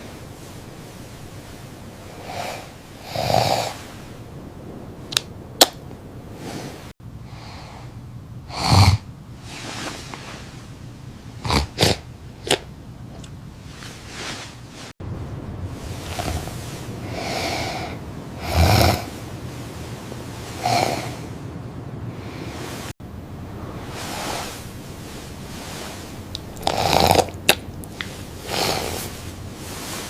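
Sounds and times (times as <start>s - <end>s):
person snoring and snorting: 2.2s - 3.8s, 8.5s - 9.1s, 11.4s - 12.6s, 16.0s - 19.2s, 20.5s - 21.3s, 26.6s - 29.2s.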